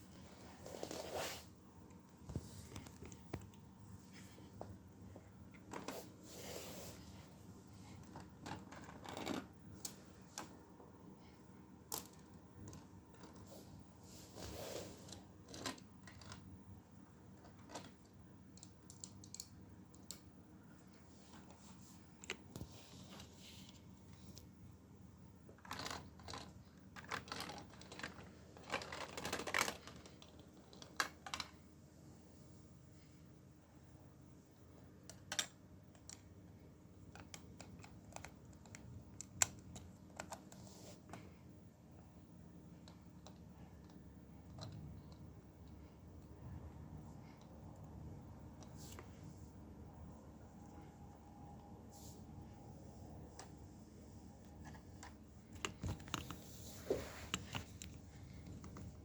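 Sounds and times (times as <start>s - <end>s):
plastic pieces clicking and rattling: 8.0s - 10.0s, 15.4s - 16.5s, 17.4s - 20.2s, 25.6s - 31.6s, 35.1s - 36.2s.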